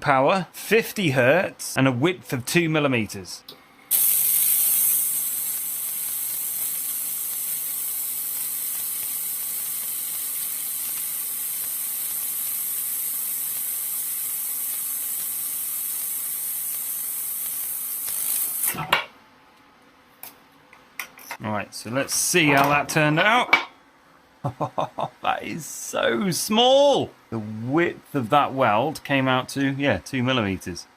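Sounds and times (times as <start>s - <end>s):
laser welder hissing: 3.9s - 18.9s.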